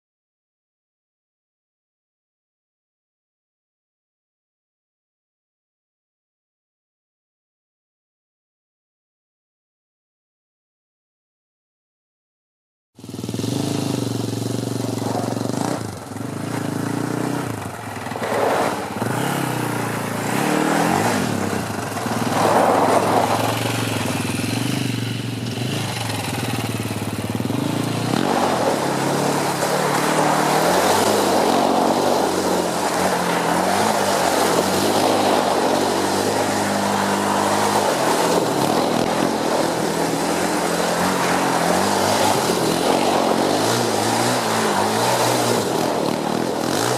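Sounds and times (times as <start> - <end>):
atv engine revving: 13.0 - 46.9.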